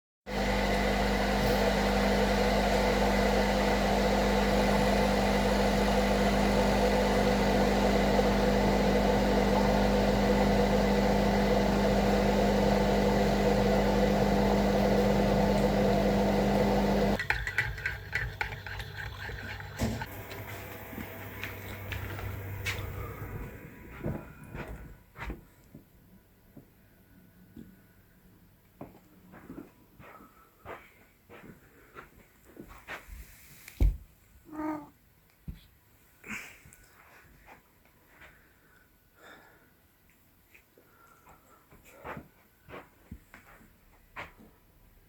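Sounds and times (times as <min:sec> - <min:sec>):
steady machine hum: 0:00.3 - 0:25.2.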